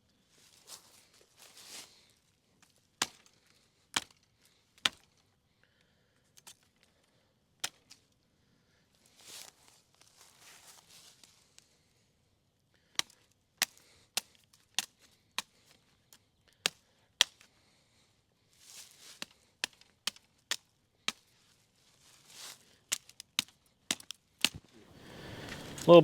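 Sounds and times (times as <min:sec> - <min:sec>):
machete chopping wood: 0:03.0 - 0:03.3, 0:22.9 - 0:24.6.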